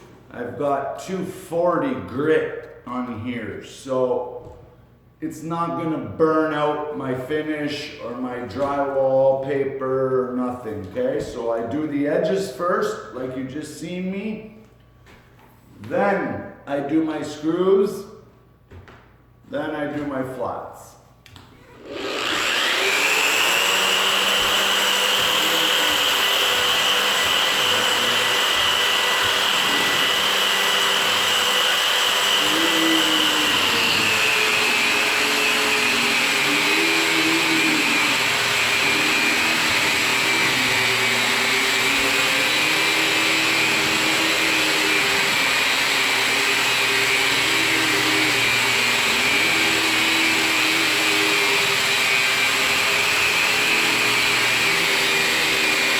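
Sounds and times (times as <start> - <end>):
drywall sander motor whine: 21.6 - 55.9.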